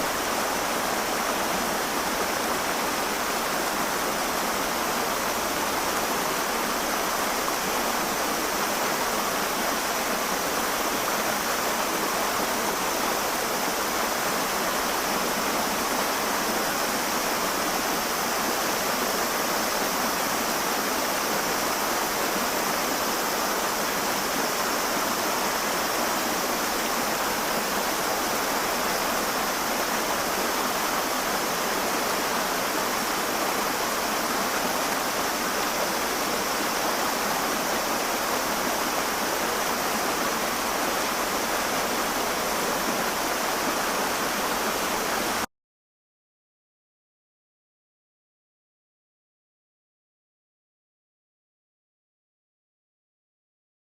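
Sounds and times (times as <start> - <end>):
river water flowing: 0.0 - 45.5.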